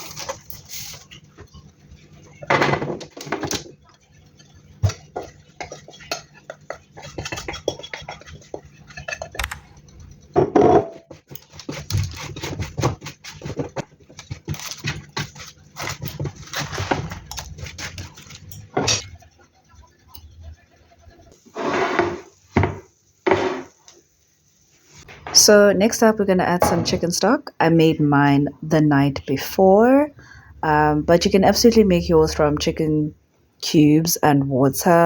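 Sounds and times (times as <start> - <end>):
utensils and cookware clatter: 0.0 - 22.7.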